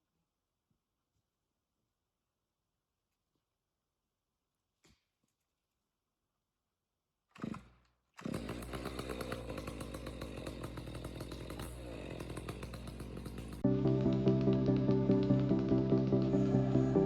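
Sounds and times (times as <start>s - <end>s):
chainsaw starting and running: 7.3s - 17.0s.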